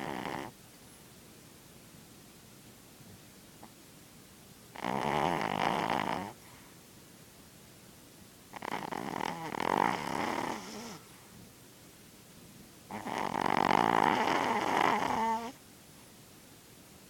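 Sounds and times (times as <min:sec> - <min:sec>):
small dog snoring: 0:00.0 - 0:00.6, 0:04.7 - 0:06.7, 0:08.5 - 0:11.2, 0:12.9 - 0:15.6.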